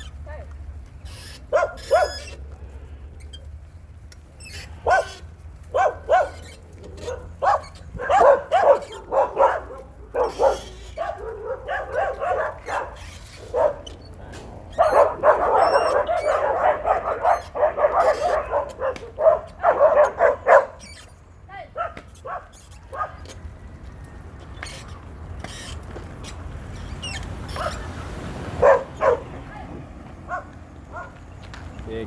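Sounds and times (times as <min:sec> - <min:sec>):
dogs barking: 0:01.1 - 0:02.4, 0:04.4 - 0:23.4, 0:27.0 - 0:31.3.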